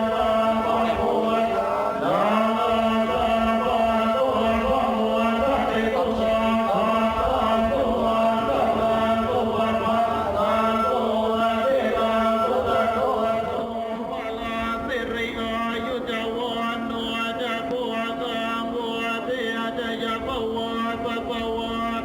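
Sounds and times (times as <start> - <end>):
men chanting in unison: 0.0 - 22.0.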